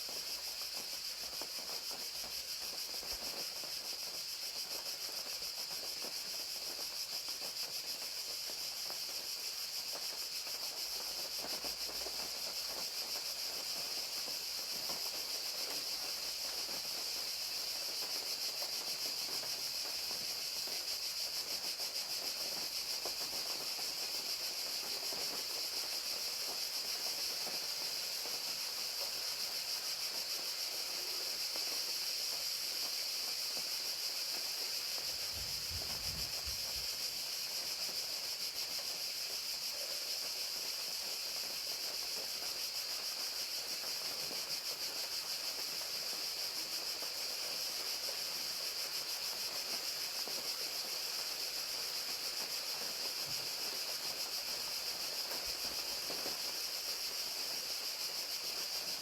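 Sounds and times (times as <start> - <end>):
crickets chirring: 0.0 - 59.0
rain pattering: 17.9 - 38.4.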